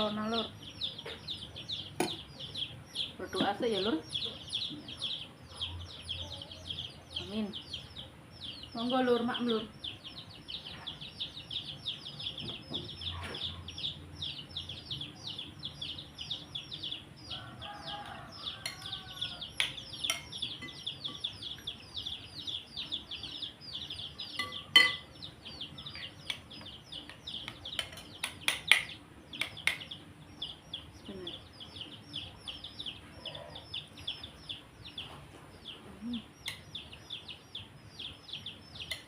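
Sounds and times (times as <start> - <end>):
rapid high chirping: 0.0 - 39.0
metal spoon clinking against bowl: 19.6 - 21.3, 24.4 - 25.1, 27.7 - 28.9.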